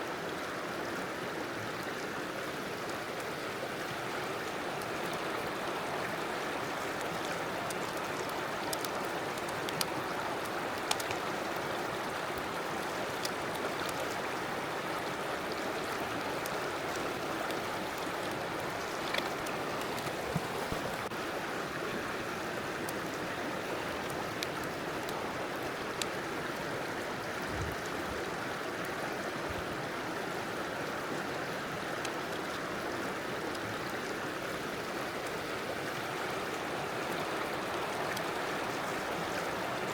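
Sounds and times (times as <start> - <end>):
river water flowing: 0.0 - 39.9
faint sharp clicks: 7.0 - 11.3.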